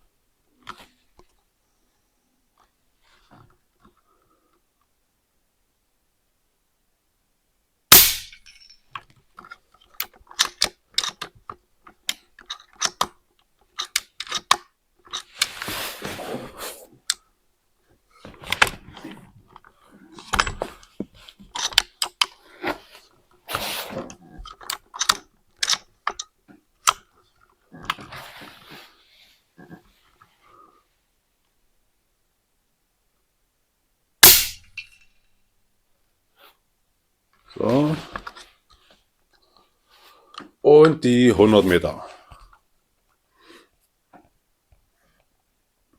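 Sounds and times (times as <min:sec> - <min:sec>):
air rifle shot: 0:07.9 - 0:08.4, 0:34.2 - 0:34.7
rifle handling clicks and knocks: 0:07.9 - 0:15.6, 0:18.3 - 0:22.4, 0:24.4 - 0:27.0.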